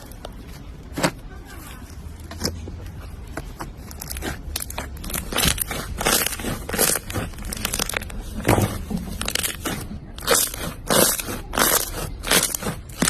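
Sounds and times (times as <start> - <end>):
slime crackling and popping: 3.6 - 13.0.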